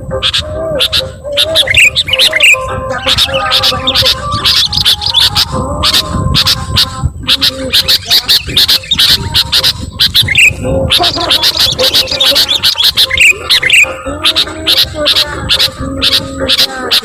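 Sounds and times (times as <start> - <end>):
bulbuls chattering: 0.0 - 17.0.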